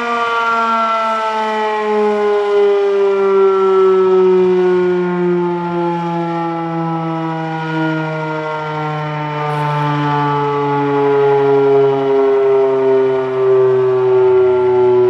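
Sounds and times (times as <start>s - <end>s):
loud fire siren: 0.0s - 15.0s.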